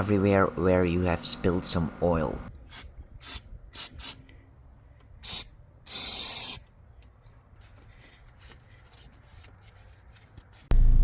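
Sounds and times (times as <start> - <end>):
aerosol spray hiss: 5.2 - 6.6.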